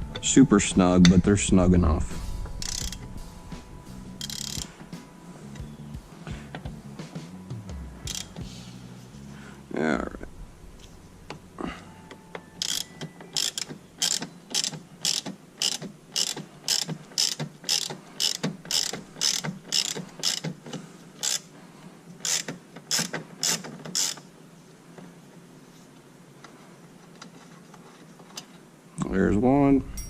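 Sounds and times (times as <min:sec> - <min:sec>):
ratchet wrench clicking: 0:02.6 - 0:03.0, 0:04.2 - 0:04.7, 0:08.0 - 0:08.5, 0:12.6 - 0:21.5, 0:22.2 - 0:24.2.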